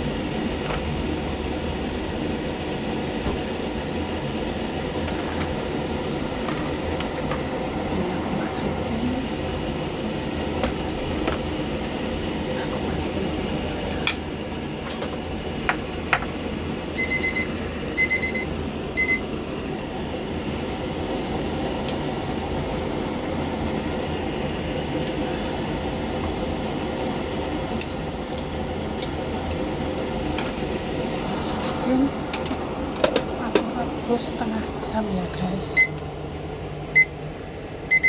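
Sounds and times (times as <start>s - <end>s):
steady hum: 0.0s - 38.0s
appliance button beeps: 17.0s - 19.3s, 35.7s - 36.0s, 36.9s - 37.2s.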